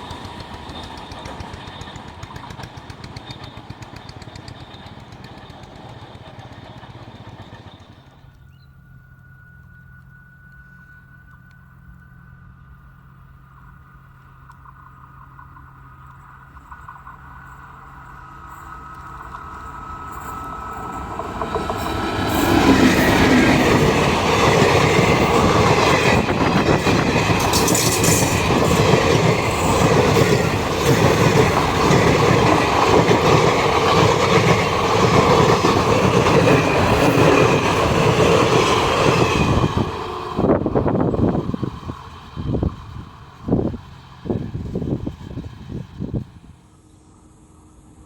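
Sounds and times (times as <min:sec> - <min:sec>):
train passing at speed: 0:00.0 - 0:48.0
wheels clattering over rail joints: 0:18.5 - 0:46.2.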